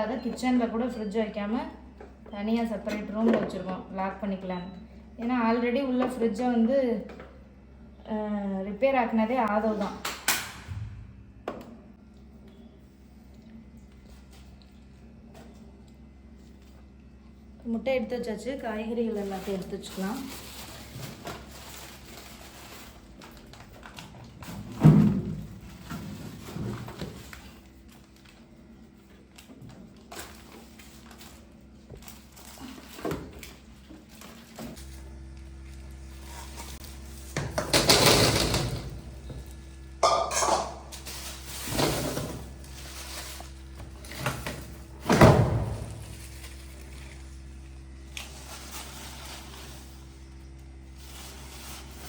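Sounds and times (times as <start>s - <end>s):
steady low hum: 0.0s - 52.0s
plastic bags rustling: 18.8s - 39.9s, 40.8s - 52.0s.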